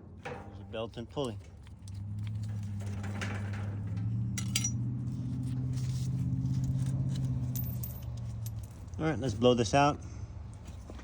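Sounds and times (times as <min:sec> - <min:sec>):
light metallic clinks: 0:04.4 - 0:04.8.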